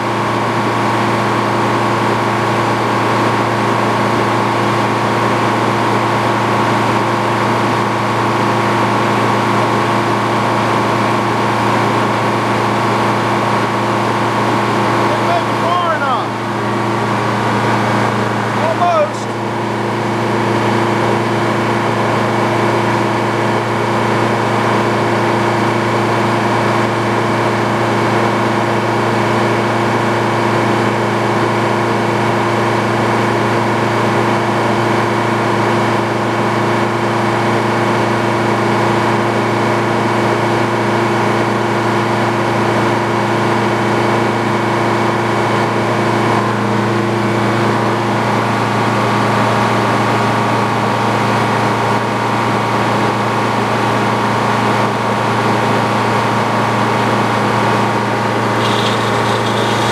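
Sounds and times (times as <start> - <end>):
sawmill engine running: 0.1 - 32.3, 45.4 - 59.9
steady whine: 57.9 - 59.9.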